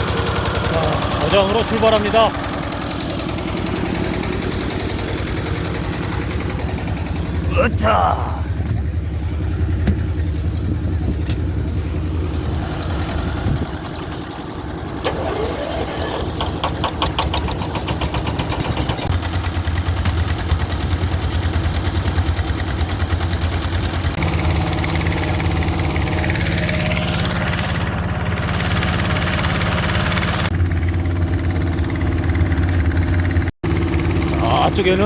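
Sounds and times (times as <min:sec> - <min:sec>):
vehicle engine running: 0:00.0 - 0:35.0
rapid rattling clatter: 0:12.8 - 0:25.0.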